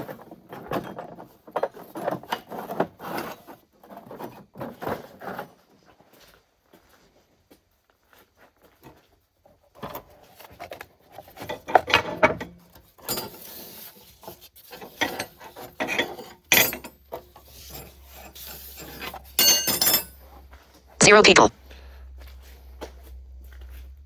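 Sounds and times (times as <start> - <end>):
metal tools scraping and clacking: 13.0 - 20.2.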